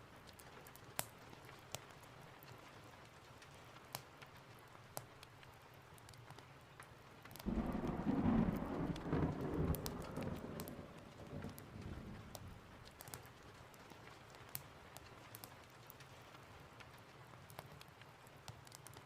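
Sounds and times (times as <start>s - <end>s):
steady rain: 0.0s - 19.0s
thunder rolling: 7.5s - 12.8s.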